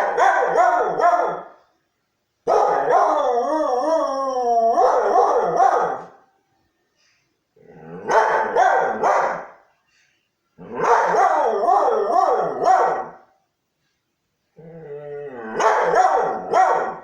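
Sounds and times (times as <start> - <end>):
dog howling: 2.8 - 5.6.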